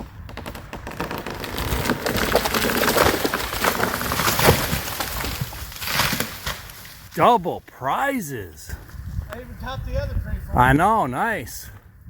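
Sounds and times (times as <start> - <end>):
tree falling with branches snapping: 0.0 - 7.2.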